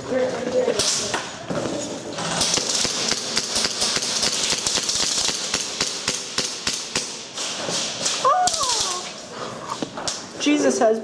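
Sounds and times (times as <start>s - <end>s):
airsoft guns firing: 2.2s - 9.1s.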